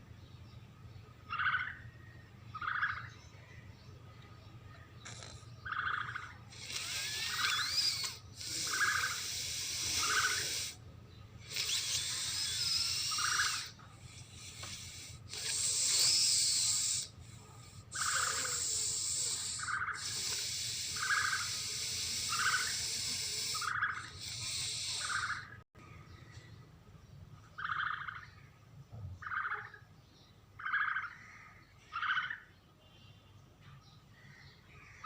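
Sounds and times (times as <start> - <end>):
high hissing rasp: 5.0 - 10.8, 11.4 - 25.6.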